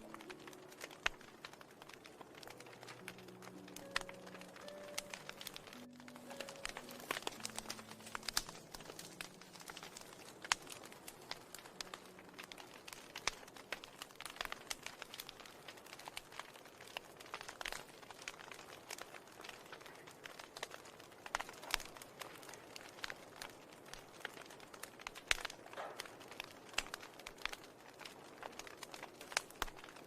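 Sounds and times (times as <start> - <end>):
ambient music: 0.0 - 14.0
soft crackling clicks: 0.0 - 30.0.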